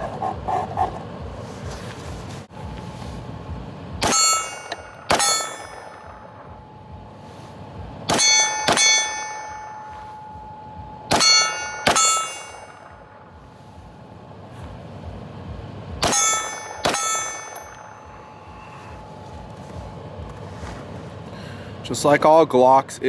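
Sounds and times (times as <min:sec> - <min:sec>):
pistol shots: 0:04.0 - 0:06.4, 0:08.1 - 0:09.4, 0:11.1 - 0:13.0, 0:16.0 - 0:17.9
steel targets clanging: 0:04.0 - 0:06.6, 0:08.0 - 0:13.2, 0:16.0 - 0:19.0.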